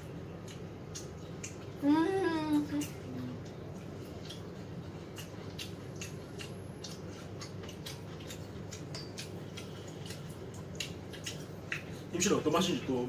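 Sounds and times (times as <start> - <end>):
person chewing crunchy food: 0.0 - 1.8, 2.7 - 12.7.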